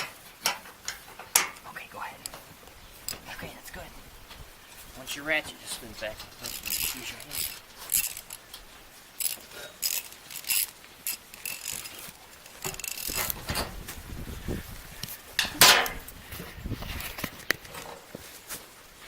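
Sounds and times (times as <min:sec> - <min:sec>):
metal tools clinking: 0:05.4 - 0:08.6, 0:09.2 - 0:13.8.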